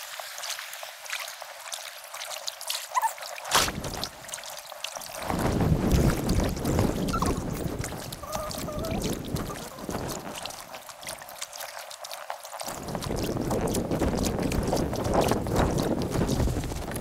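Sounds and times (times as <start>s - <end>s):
paddle splashes and drips: 0.0s - 17.0s
water sloshing: 0.0s - 17.0s
wind rumbling on microphone: 3.6s - 4.3s, 5.0s - 11.4s, 12.6s - 17.0s.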